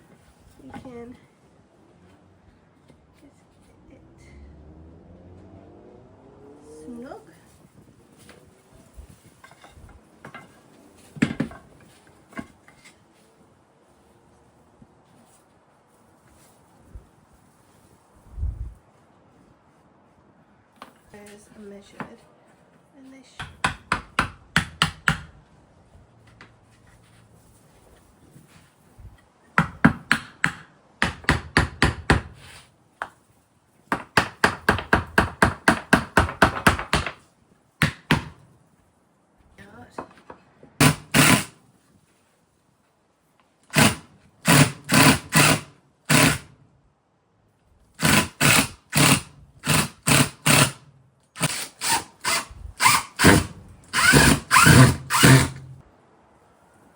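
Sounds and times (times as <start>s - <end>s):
hammer striking wood: 23.4s - 25.3s, 29.6s - 32.4s, 33.9s - 37.2s, 37.8s - 38.4s.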